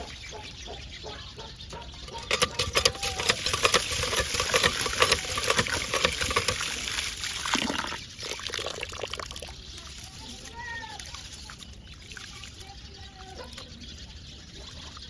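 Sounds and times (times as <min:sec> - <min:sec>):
sharp clicks and clatter: 0:01.8 - 0:08.1
water splashing and pouring: 0:02.3 - 0:12.9.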